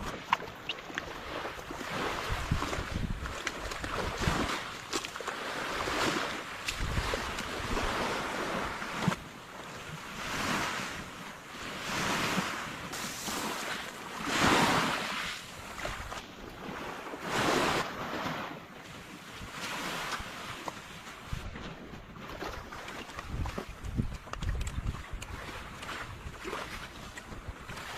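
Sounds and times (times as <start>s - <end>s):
sea waves breaking on beach: 0.0s - 27.9s
wind on microphone: 1.2s - 4.7s, 5.6s - 9.2s, 21.2s - 27.9s.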